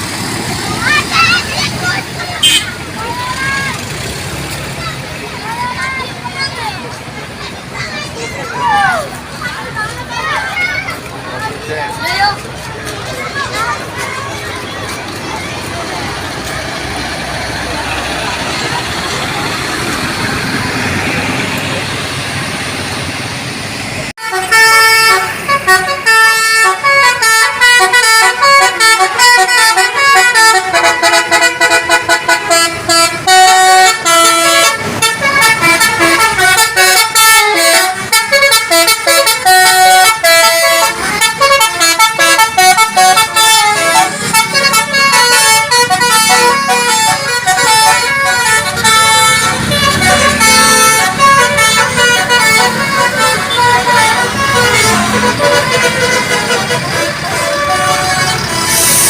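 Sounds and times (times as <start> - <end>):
traffic noise: 0.0 - 59.0
bus multi-tone horn melody: 0.8 - 4.2, 24.2 - 59.0.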